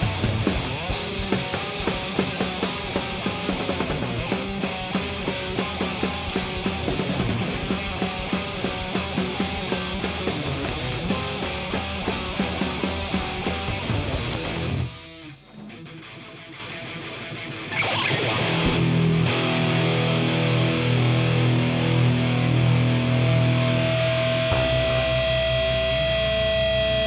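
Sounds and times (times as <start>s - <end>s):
fast drum beat: 0.0s - 15.0s
distorted electric guitar: 0.0s - 27.0s.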